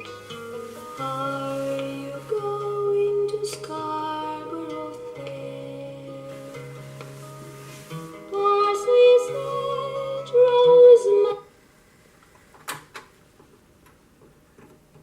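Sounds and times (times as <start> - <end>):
song with singing on a record: 0.0 - 11.6.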